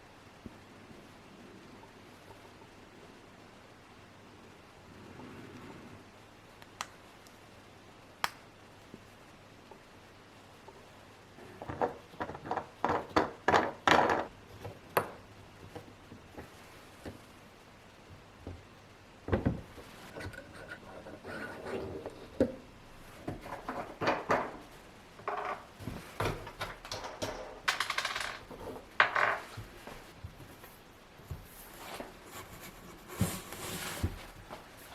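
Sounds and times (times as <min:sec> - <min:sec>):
small hard objects clicking and clattering: 0:26.4 - 0:29.5.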